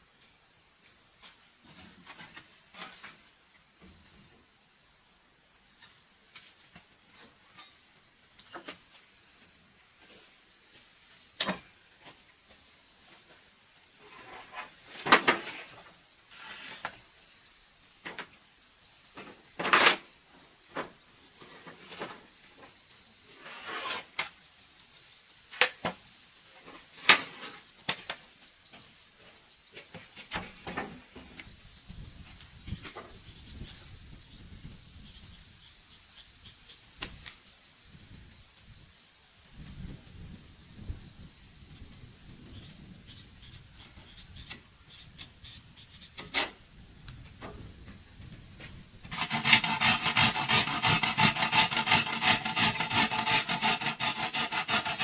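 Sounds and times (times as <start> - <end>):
high insect trill: 0.0 - 55.0
short scrapes: 23.4 - 24.2, 49.1 - 55.0.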